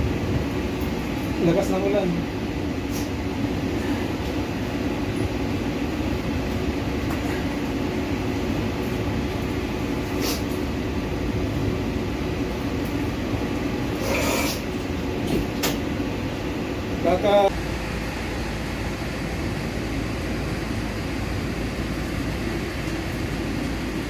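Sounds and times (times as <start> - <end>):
strong wind: 0.0 - 24.0.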